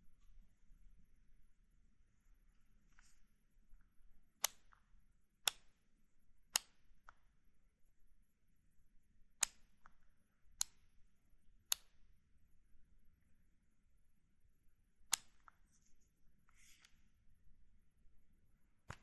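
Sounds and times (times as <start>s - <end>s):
insulin pen clicking: 4.3s - 5.8s, 6.5s - 7.2s, 15.1s - 15.6s.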